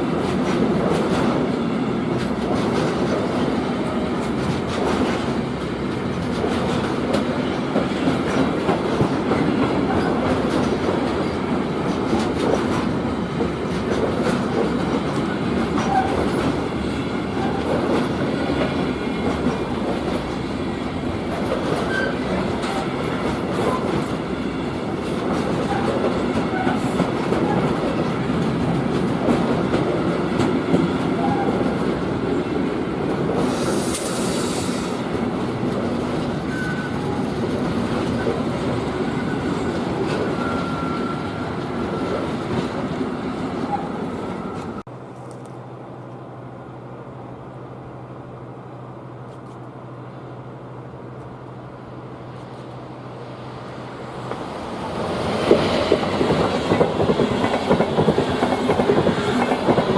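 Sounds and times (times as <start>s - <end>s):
freight train wheels rumbling: 0.0s - 59.9s
wheels clicking over rail joints: 55.3s - 59.9s.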